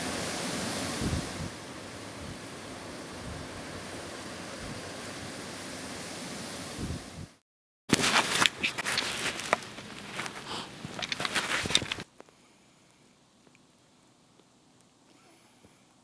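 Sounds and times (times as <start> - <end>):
rushing hiss: 0.0 - 7.3, 7.9 - 12.1
sharp crunches and clicks: 7.9 - 12.1.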